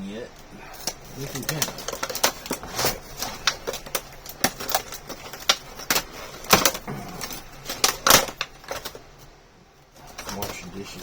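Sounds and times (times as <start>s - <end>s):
packaging clicking and snapping: 0.7s - 9.1s.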